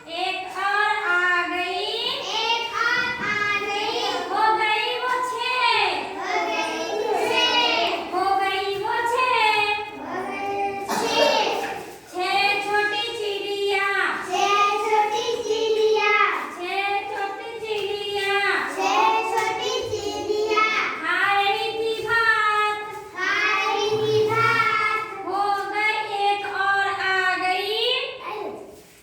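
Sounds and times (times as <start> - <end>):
child singing rhyme: 14.2 - 20.9, 23.2 - 25.3.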